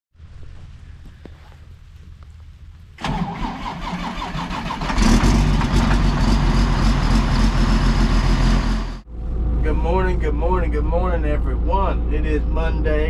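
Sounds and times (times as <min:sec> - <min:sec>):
starter cranking engine: 0:03.0 - 0:07.5
diesel engine running: 0:03.0 - 0:13.0.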